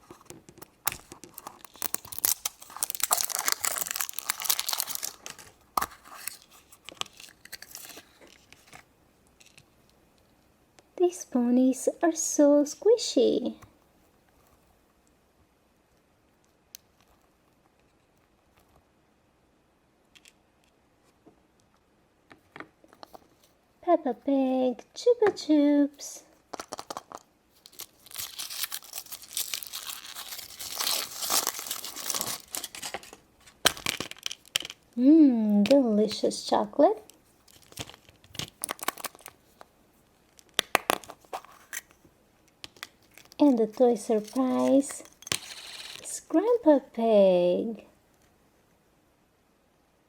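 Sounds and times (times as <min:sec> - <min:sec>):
toys and packaging clicking: 0:00.0 - 0:10.3, 0:26.5 - 0:34.9, 0:37.0 - 0:46.1
wrapper tearing and crinkling: 0:00.9 - 0:08.2, 0:26.7 - 0:34.8, 0:37.4 - 0:39.6, 0:42.8 - 0:46.1.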